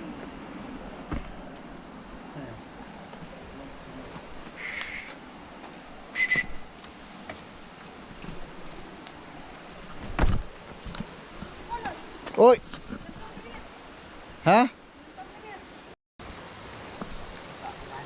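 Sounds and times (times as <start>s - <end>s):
insects droning: 0.0s - 18.0s
whistle-like calls: 4.6s - 5.2s, 6.1s - 6.7s.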